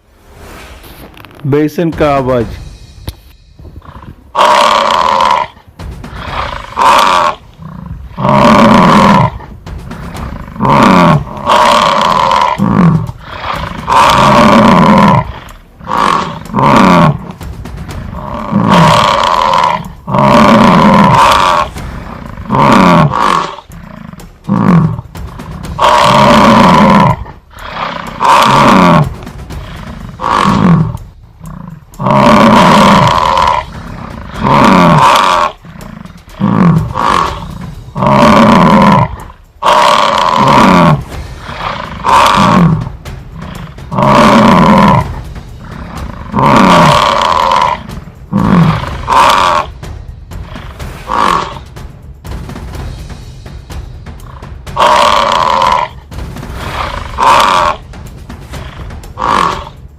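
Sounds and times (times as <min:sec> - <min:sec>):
large animal roaring: 0:03.8 - 0:09.5, 0:10.5 - 0:17.3, 0:18.1 - 0:25.0, 0:25.8 - 0:42.8, 0:43.6 - 0:45.2, 0:45.8 - 0:49.8.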